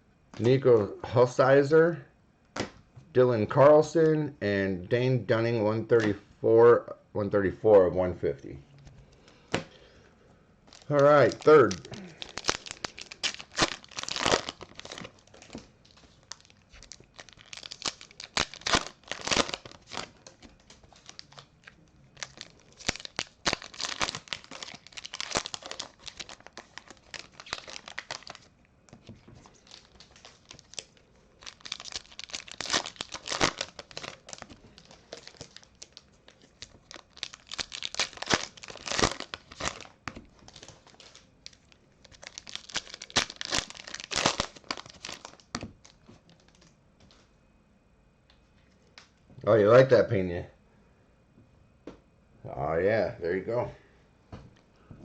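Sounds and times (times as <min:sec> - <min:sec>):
card pack wrapper tearing: 0:10.7 - 0:46.7.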